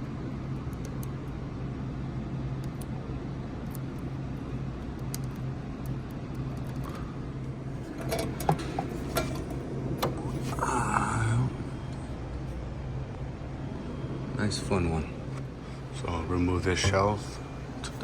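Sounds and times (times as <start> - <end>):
low machine hum: 0.0 - 18.0.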